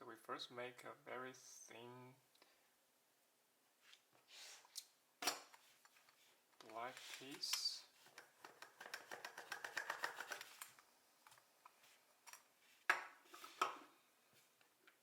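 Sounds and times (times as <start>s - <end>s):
rapid small clicks of tools: 8.1s - 10.8s.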